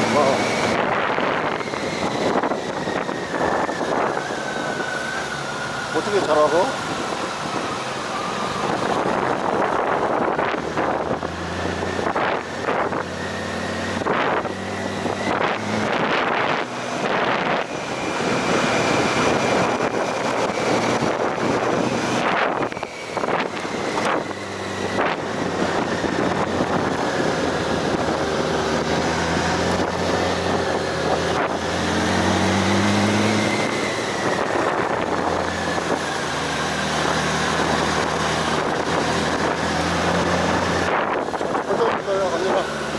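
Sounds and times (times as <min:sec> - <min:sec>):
wind on the microphone: 0:00.0 - 0:42.9
motorcycle engine running: 0:17.3 - 0:42.9.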